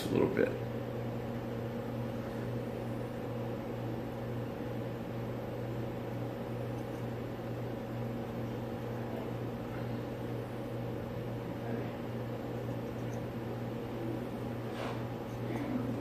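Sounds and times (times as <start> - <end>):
appliance motor humming: 0.5 - 16.0.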